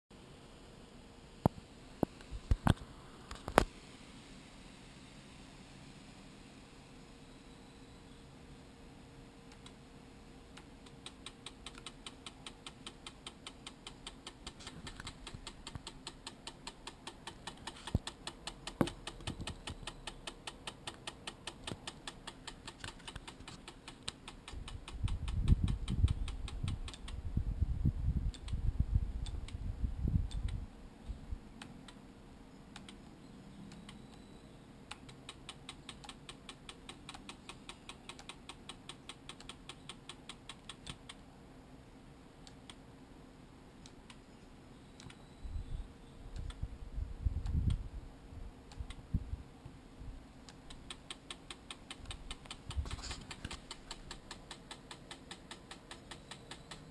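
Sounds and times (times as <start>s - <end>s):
camera lens clicking: 50.5s - 56.9s.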